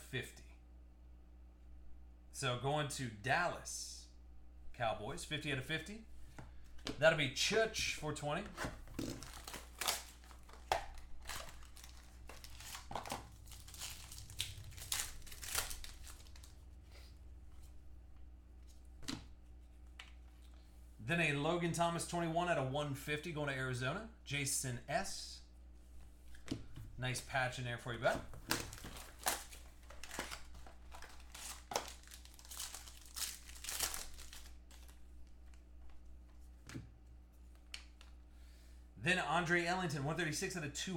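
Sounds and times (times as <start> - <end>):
low electrical hum: 0.0 - 40.9
plastic packaging crinkling: 8.9 - 16.6, 28.4 - 35.6.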